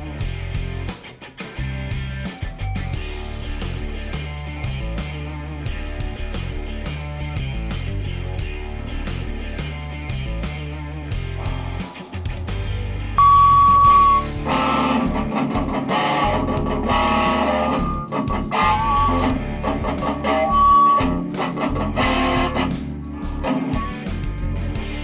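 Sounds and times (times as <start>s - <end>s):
electric guitar through amplifier: 13.2s - 25.0s.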